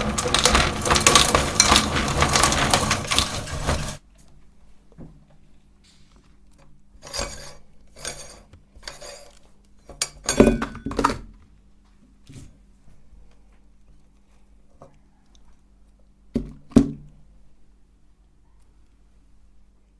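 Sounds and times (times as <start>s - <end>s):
metal clanks and clinks: 0.0s - 4.0s
metal kitchenware scraping: 0.0s - 4.0s, 7.0s - 10.9s.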